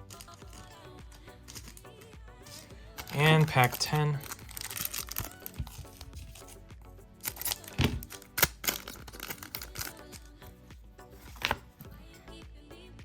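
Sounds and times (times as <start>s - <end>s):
background music: 0.0s - 13.0s
foil pack crackling and tearing: 2.6s - 6.6s, 7.2s - 10.2s.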